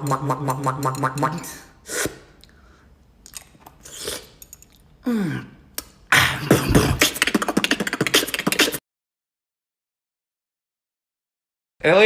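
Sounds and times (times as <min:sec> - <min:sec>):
person beatboxing: 0:00.0 - 0:02.4, 0:05.8 - 0:08.8.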